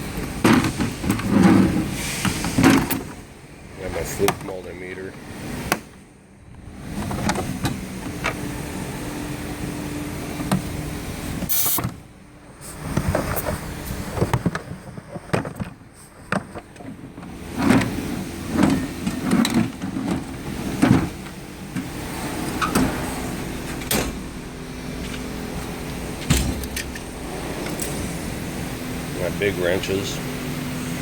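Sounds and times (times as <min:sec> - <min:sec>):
toolbox drawers sliding on metal: 0:00.3 - 0:03.3, 0:16.5 - 0:29.3.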